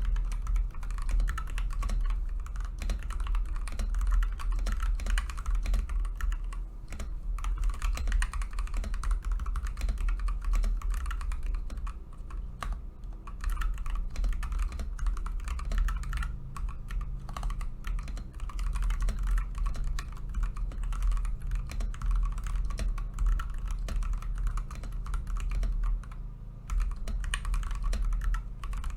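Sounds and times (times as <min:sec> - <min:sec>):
fast mechanical keyboard typing: 0:00.0 - 0:28.9.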